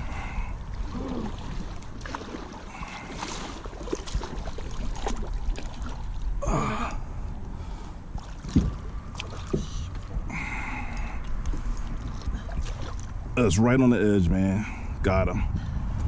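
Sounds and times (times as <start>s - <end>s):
water stirring: 0.0s - 6.4s, 8.1s - 13.4s
steady low rumble: 0.0s - 16.0s.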